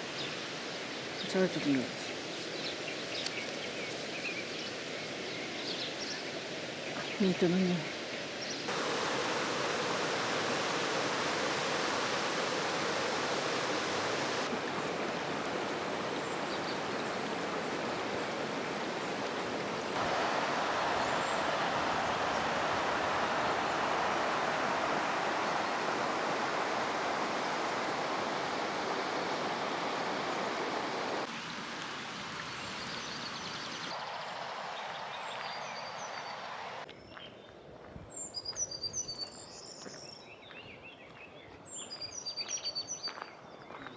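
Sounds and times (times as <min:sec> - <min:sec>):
river rushing over stones: 0:06.4 - 0:36.9
faint bird chirps: 0:38.2 - 0:43.9.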